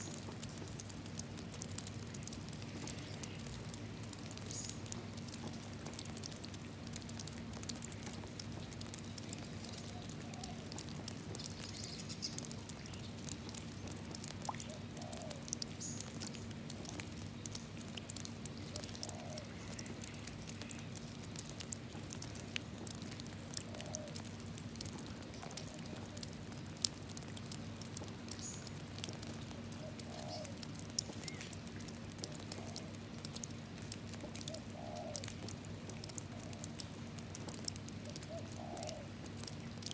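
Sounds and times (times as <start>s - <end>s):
rain falling into a puddle: 0.0s - 39.9s
faint bird calls: 9.8s - 10.8s, 14.6s - 16.0s, 18.7s - 20.8s, 29.7s - 31.6s.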